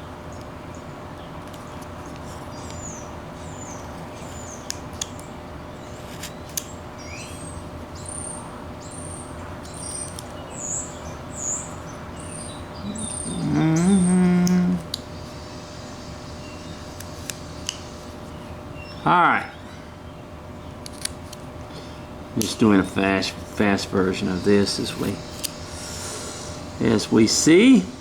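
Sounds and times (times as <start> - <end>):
steady background hum: 0.0 - 28.0
small bird chirping: 2.4 - 4.7, 5.8 - 19.0.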